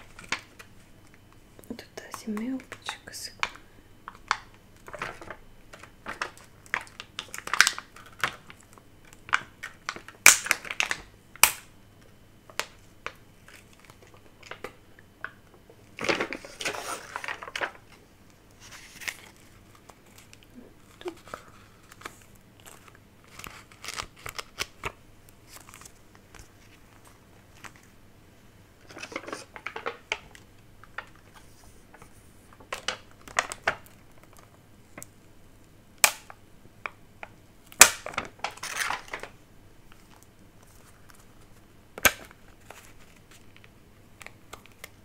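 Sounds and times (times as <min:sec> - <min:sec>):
paper stickers crinkling: 0:01.8 - 0:11.1, 0:16.0 - 0:27.9, 0:28.8 - 0:35.2, 0:37.8 - 0:45.0
sticker peeling rustle: 0:16.2 - 0:27.9.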